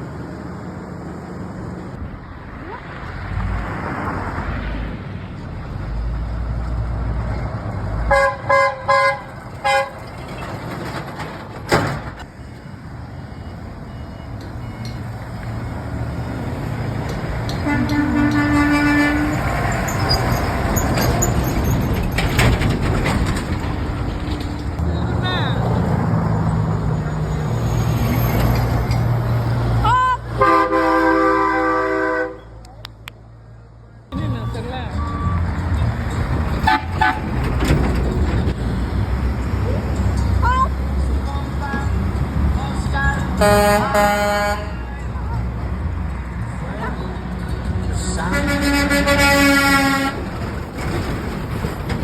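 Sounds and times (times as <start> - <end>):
traffic passing: 0.0 - 52.0
vehicle horn honking: 8.1 - 10.0, 17.6 - 19.6, 30.4 - 32.6, 43.4 - 44.9, 48.2 - 50.2.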